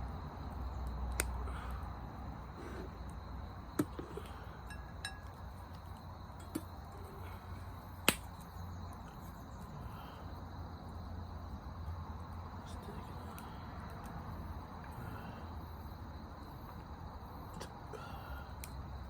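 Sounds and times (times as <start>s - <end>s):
campfire crackling and popping: 0.4s - 1.5s, 2.2s - 9.7s.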